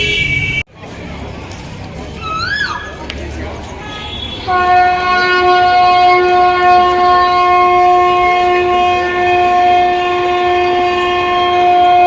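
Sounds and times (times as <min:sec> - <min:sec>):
long steady horn-like tone: 0:03.8 - 0:12.0.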